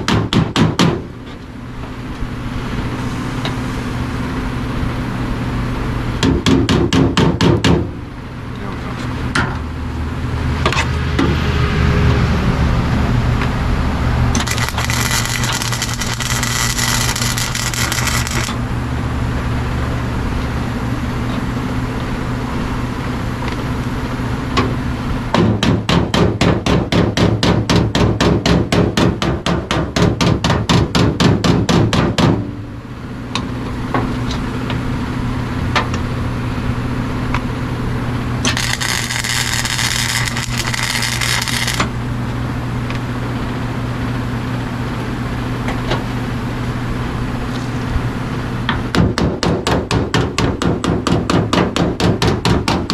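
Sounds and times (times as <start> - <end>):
electrical hum: 7.9 - 25.3, 32.5 - 49.0
welding arc crackling: 13.8 - 18.8, 38.4 - 42.1.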